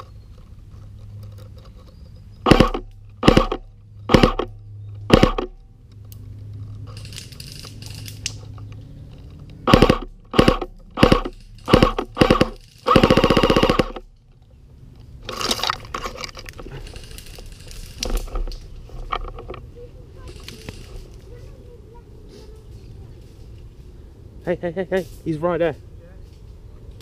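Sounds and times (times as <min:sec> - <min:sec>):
rustling and movement: 0:00.0 - 0:27.0
airsoft gun shots: 0:02.4 - 0:04.5, 0:05.1 - 0:05.5, 0:09.6 - 0:14.0.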